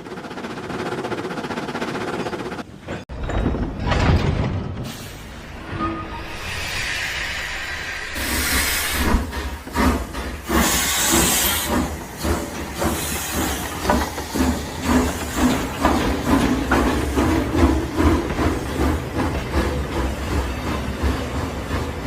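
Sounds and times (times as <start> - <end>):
steam locomotive chuffing: 0.0 - 2.7, 6.4 - 22.0
hissing steam: 6.3 - 18.1.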